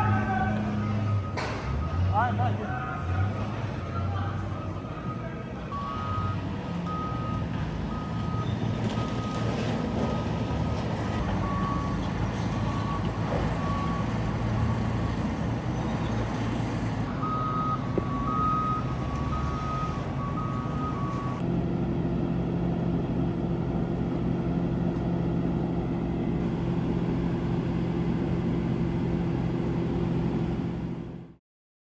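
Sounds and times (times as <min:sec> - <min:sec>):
heavy diesel engine running: 0:00.0 - 0:31.4
reversing alarm beeping: 0:00.1 - 0:02.3, 0:03.0 - 0:09.4, 0:11.4 - 0:14.9, 0:17.1 - 0:21.4.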